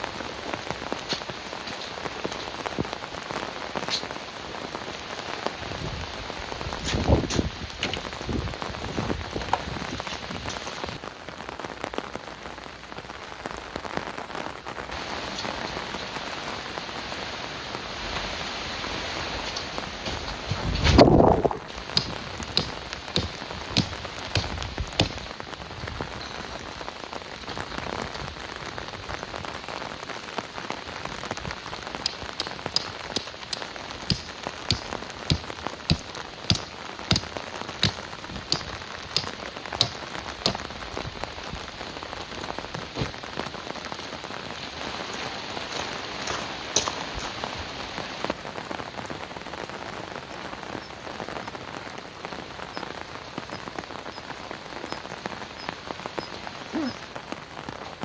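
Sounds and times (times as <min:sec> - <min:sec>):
heavy rain falling: 0:00.0 - 0:58.0.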